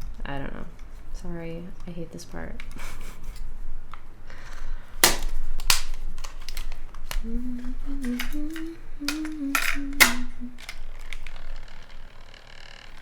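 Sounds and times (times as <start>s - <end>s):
small hard parts clicking: 2.6s - 13.0s
person humming: 7.2s - 10.9s.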